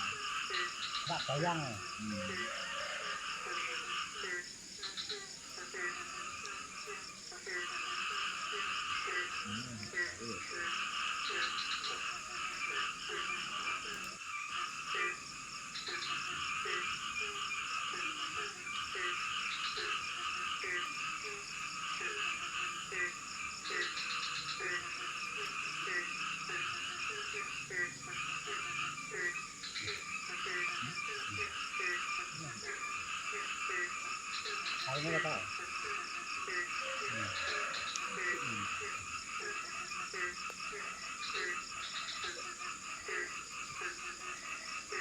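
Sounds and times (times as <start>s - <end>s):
chorus of frogs and insects: 0.0s - 45.0s
high insect whine: 0.0s - 45.0s.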